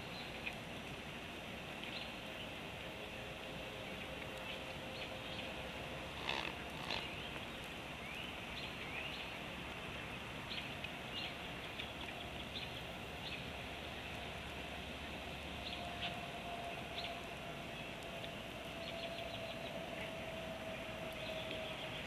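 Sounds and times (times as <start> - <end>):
steady background hiss: 0.0 - 22.0
birds chirping: 3.8 - 9.4
loud bird calls: 6.1 - 7.4.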